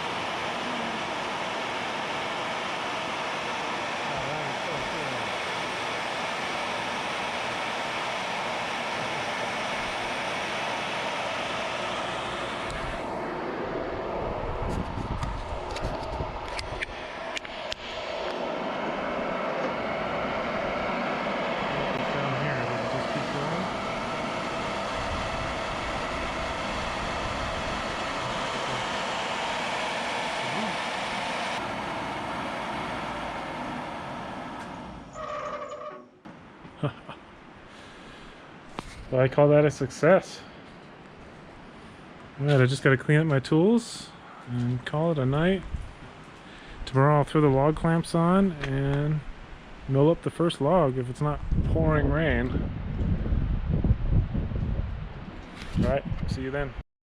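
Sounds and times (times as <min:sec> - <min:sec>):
sawmill motor and blade whirring: 0:00.0 - 0:36.2
low rumble: 0:12.6 - 0:28.9.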